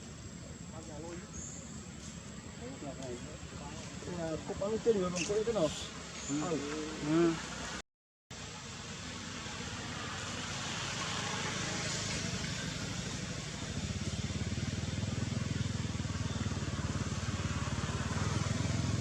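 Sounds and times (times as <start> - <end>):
vehicle engine running: 8.5 - 19.0.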